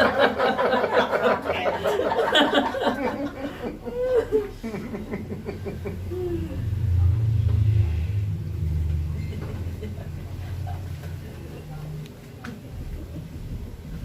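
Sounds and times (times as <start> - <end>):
people laughing: 0.0 - 6.8, 9.1 - 11.4.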